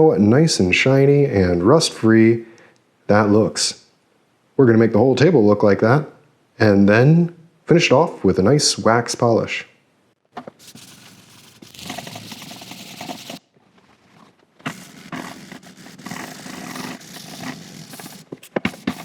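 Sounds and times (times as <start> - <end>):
scouring pad scrubbing metal: 10.6 - 13.4, 14.7 - 19.0.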